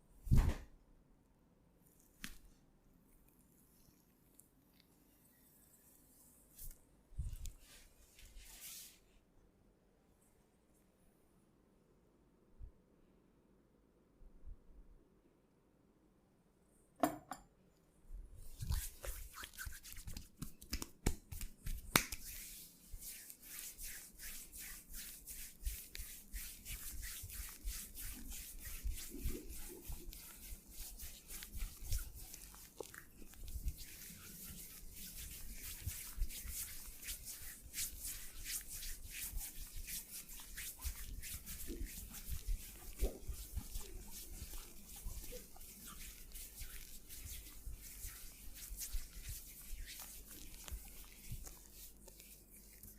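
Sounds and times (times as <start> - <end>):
hands rubbing and patting skin: 1.8 - 2.6, 4.3 - 9.0, 18.4 - 52.9.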